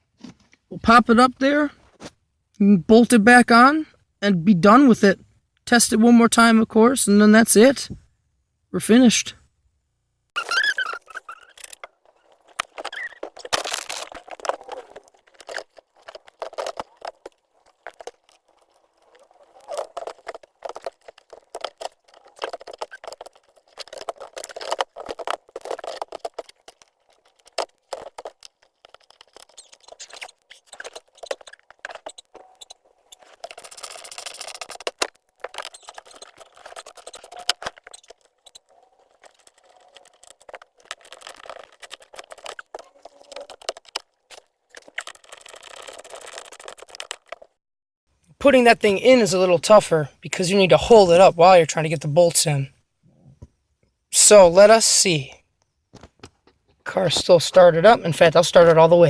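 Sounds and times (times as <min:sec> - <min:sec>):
plastic and metal parts rattling: 0:10.4 - 0:47.6.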